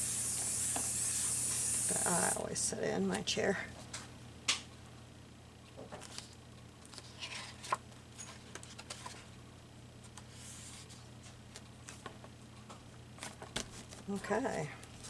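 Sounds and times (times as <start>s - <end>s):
paper rustling: 6.0s - 9.3s.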